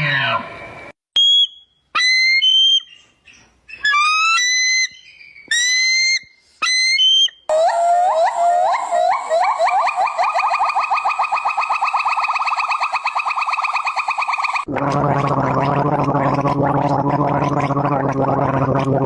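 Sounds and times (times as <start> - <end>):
animal whistled calls: 3.8 - 14.7
rapid upward-sweeping chirps: 7.6 - 14.7.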